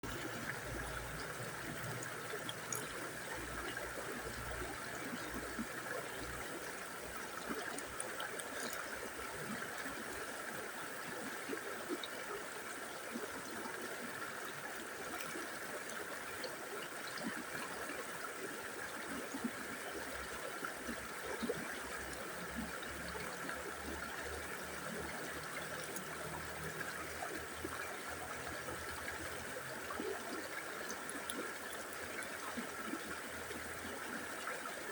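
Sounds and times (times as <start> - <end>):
river water flowing: 0.0 - 34.9
water splashes: 0.0 - 34.9.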